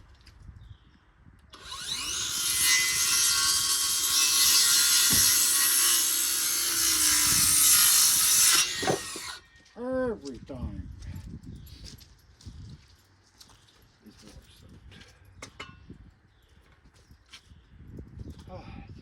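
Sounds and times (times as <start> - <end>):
power saw cutting wood: 1.5 - 9.4.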